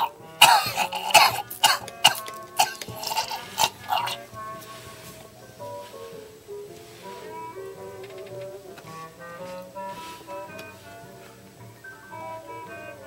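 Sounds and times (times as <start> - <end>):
man coughing: 0.0 - 4.3
music: 0.0 - 13.0.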